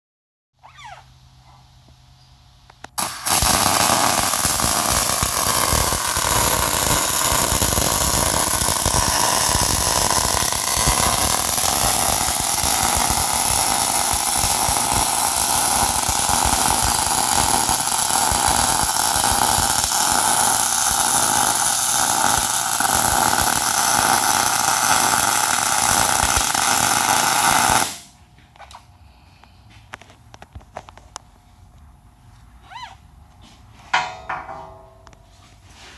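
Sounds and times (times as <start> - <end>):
welding arc crackling hiss: 2.7 - 28.1.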